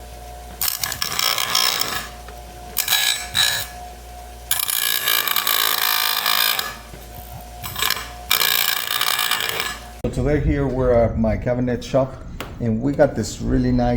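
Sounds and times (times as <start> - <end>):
grinder running quietly: 0.0 - 10.0
grinder wheel grinding metal: 0.0 - 10.0.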